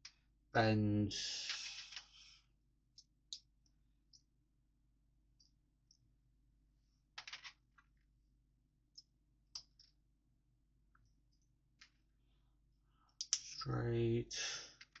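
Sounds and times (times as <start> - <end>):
plastic bricks clicking together: 7.2 - 7.6, 14.8 - 15.0.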